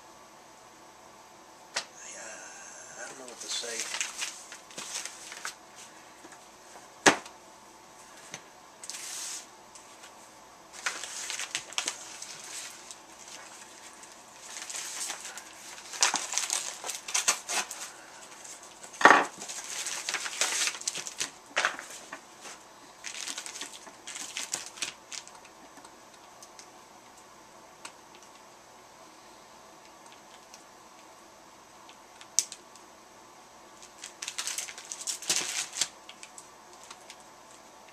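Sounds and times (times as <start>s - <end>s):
rustling of packaging: 3.1s - 7.2s, 8.0s - 25.9s, 33.8s - 37.6s.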